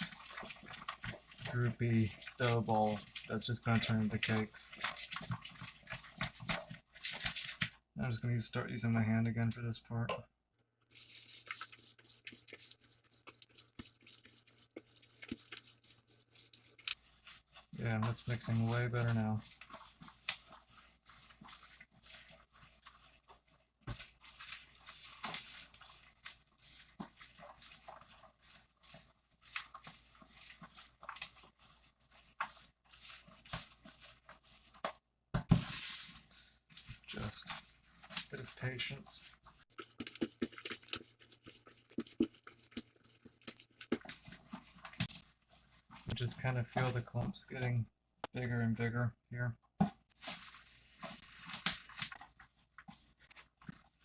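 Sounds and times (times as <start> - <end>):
hand squishing cookie dough: 0.0 - 10.0
hands kneading dough: 0.0 - 10.1, 10.8 - 47.7.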